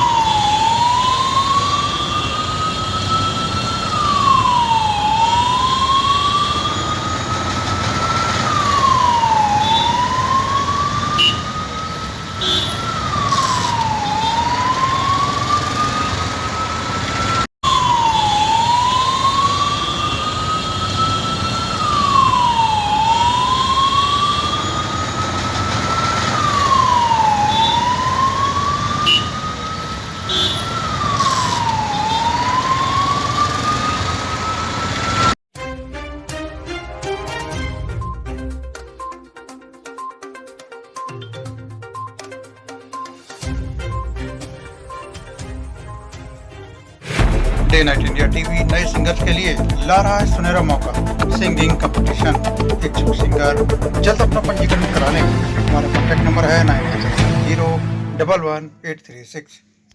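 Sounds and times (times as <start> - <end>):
ambulance siren wailing: 0.0 - 35.4, 47.7 - 58.0
traffic noise: 0.0 - 35.4.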